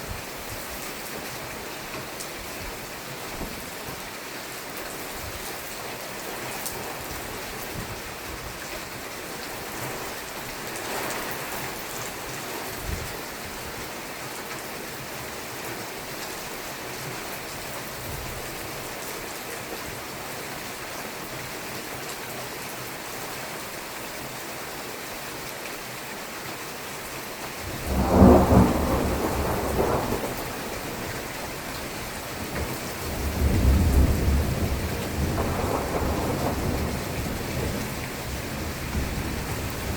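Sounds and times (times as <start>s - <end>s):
steady rain: 0.0s - 39.9s
thunder crack and rumble: 27.6s - 31.5s, 32.4s - 39.9s.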